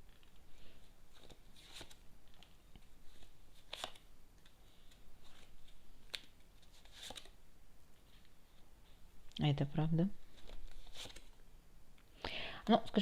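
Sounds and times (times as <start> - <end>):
cards being shuffled: 1.1 - 7.4, 10.2 - 11.4.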